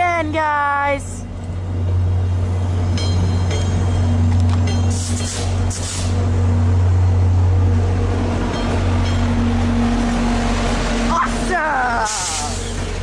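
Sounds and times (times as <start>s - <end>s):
diesel locomotive engine drone: 0.0s - 13.0s
brief hissing bursts: 5.0s - 6.2s.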